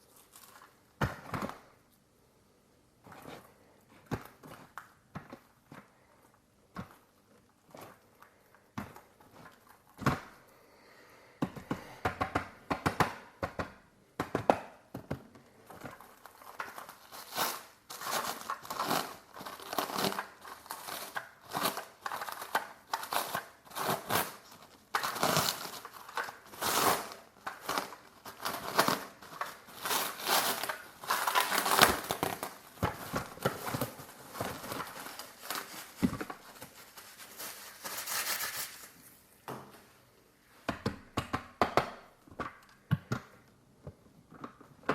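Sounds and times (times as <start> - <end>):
wrapping crinkling and tearing: 0.0 - 1.0, 15.6 - 39.3.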